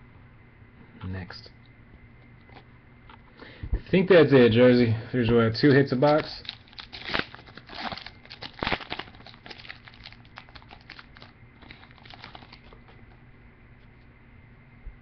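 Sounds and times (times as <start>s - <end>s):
cards rustling: 5.6s - 13.0s
wrapper crinkling and tearing: 6.0s - 12.9s.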